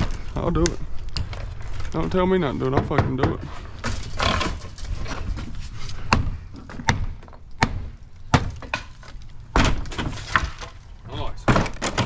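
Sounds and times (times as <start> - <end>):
demolition tool chopping wood: 6.1 - 8.9, 11.4 - 12.0.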